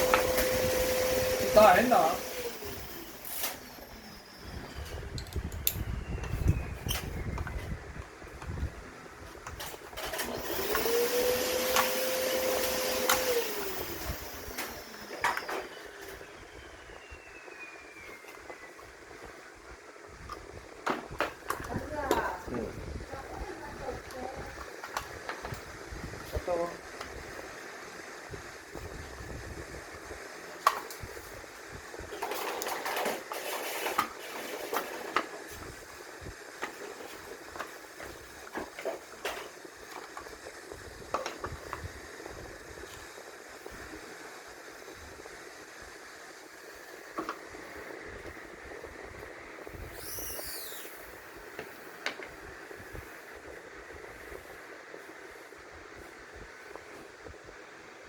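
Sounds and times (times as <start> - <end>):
small electric motor whirring: 0.0 - 7.6, 10.1 - 18.7, 49.6 - 52.0.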